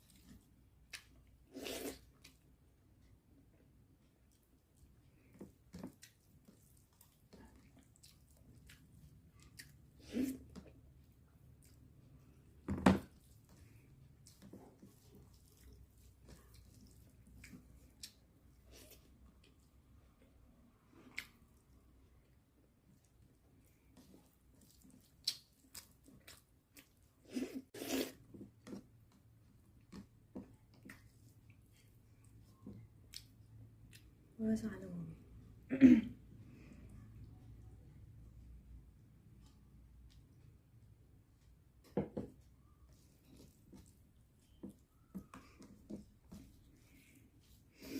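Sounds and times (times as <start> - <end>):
close chewing and mouth sounds: 0.0 - 34.4, 36.3 - 47.9
mouth clicks and chewing: 24.6 - 27.1.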